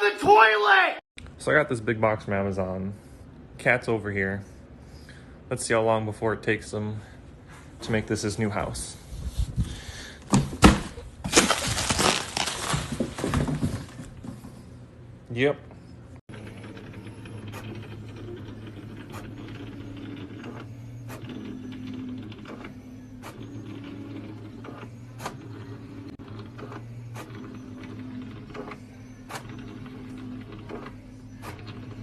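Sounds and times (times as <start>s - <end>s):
small machine humming: 15.8s - 32.0s.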